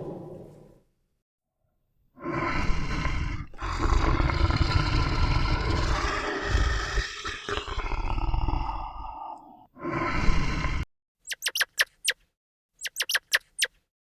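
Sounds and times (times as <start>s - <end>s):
tiger roaring and growling: 2.2s - 10.8s.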